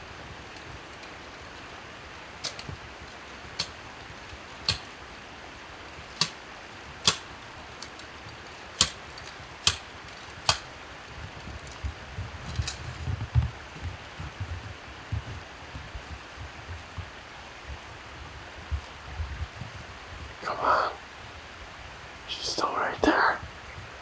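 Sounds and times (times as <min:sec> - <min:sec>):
handling thumps: 0:00.0 - 0:13.1
sharp metallic clicks and taps: 0:02.4 - 0:05.3, 0:05.9 - 0:10.8.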